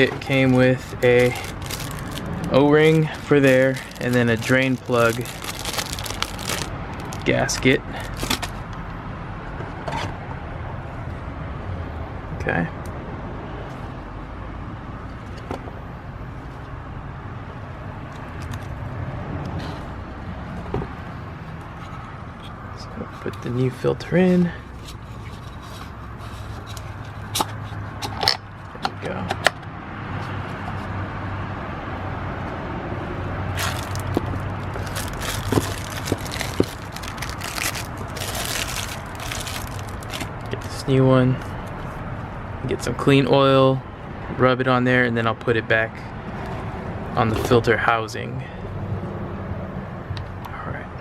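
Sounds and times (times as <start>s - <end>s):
crackling and scraping of parts: 0.0s - 8.8s, 24.7s - 29.6s, 33.6s - 42.0s
outdoor background rumble: 0.0s - 51.0s.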